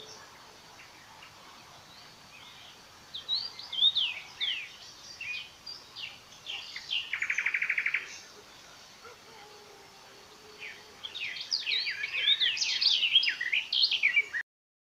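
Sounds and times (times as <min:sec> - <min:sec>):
faint outdoor hiss: 0:00.0 - 0:14.4
birds chirping and whistling: 0:03.2 - 0:08.3, 0:10.6 - 0:14.4.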